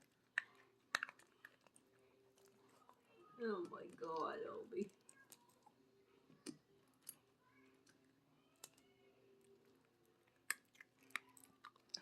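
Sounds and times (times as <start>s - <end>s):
dog chewing food: 0.0s - 5.8s.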